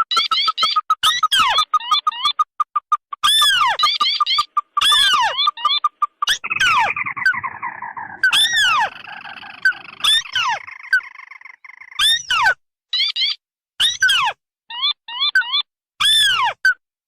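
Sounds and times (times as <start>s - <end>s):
down-slurred crake calls: 0.1s - 12.5s
rapid rattling chatter: 6.4s - 11.2s.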